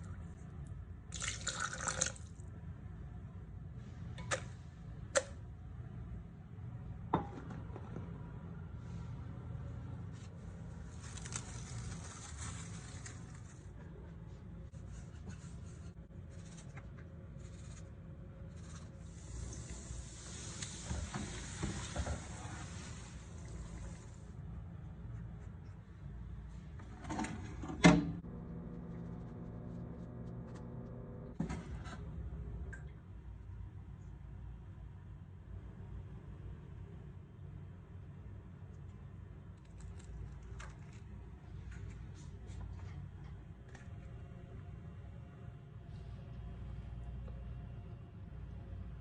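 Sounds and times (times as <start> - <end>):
steady low hum: 0.0 - 49.0
soft scraping and rustling: 10.0 - 24.3.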